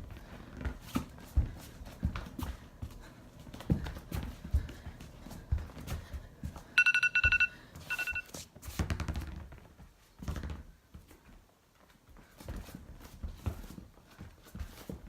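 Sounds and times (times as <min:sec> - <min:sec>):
high electronic ringing tone: 0:06.8 - 0:08.3.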